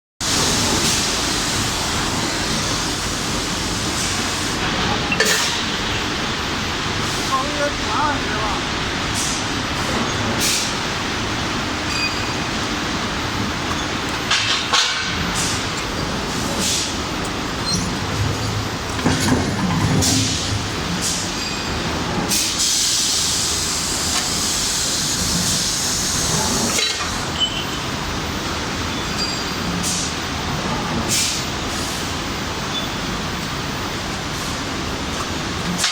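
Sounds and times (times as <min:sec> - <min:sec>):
hiss: 0:00.2 - 0:04.6, 0:22.3 - 0:26.8, 0:31.1 - 0:32.1
steady machinery noise: 0:00.2 - 0:35.9.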